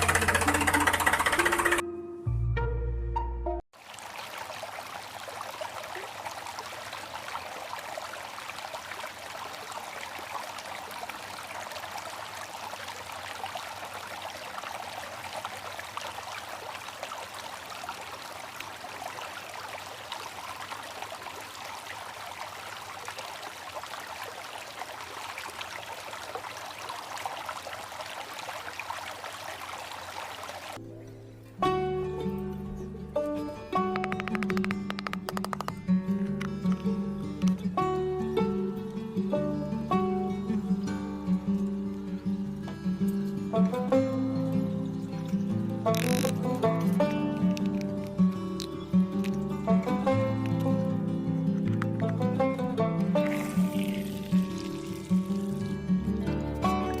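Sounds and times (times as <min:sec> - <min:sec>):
water trickling: 0:03.8 - 0:31.2, 0:40.4 - 0:52.5, 0:53.1 - 0:57.0.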